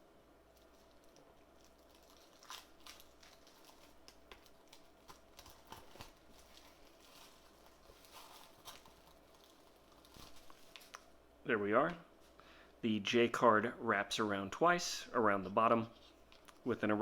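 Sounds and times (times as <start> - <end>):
plastic wrapping crinkling: 0.4 - 11.2, 15.9 - 16.7.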